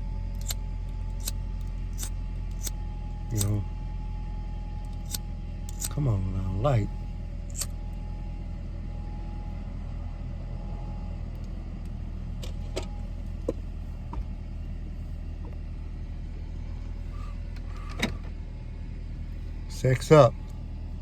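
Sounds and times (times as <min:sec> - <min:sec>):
car interior rumble: 0:10.7 - 0:21.0.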